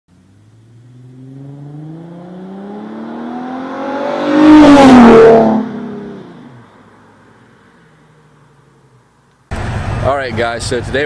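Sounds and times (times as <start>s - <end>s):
car accelerating past: 0.2s - 6.6s.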